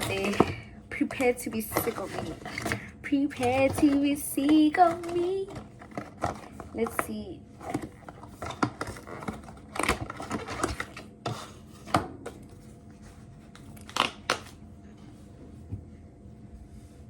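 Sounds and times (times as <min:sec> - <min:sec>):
packaging crinkling and tearing: 0:01.2 - 0:11.4, 0:13.5 - 0:14.6.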